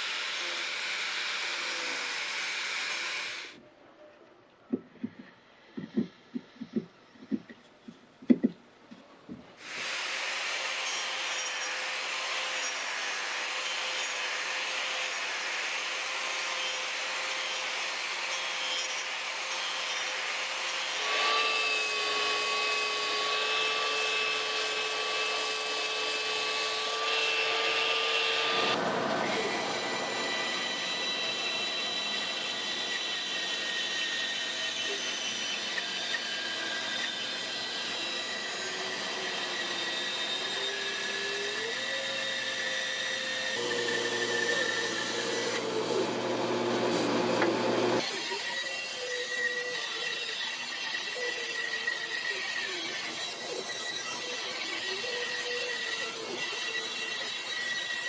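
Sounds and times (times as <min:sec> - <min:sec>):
sharp knocks: 0:04.7 - 0:07.6, 0:08.2 - 0:08.6
power tool running on wood: 0:09.6 - 0:58.0.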